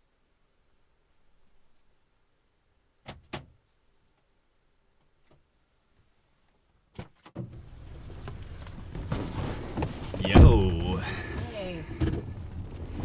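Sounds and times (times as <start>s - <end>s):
outside noise: 0.0s - 13.0s.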